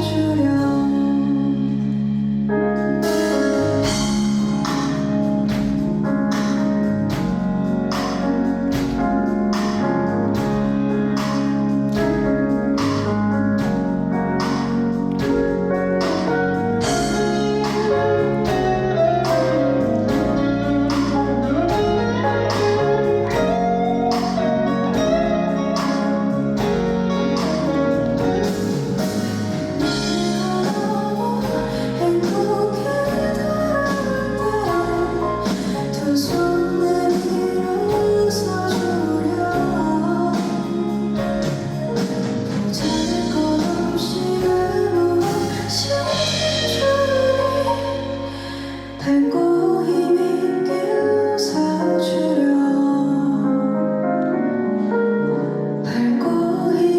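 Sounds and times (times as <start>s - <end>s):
person singing: 0.0s - 2.1s, 15.4s - 41.6s, 42.5s - 56.9s
guitar: 0.0s - 56.9s
live band ballad: 0.0s - 56.9s.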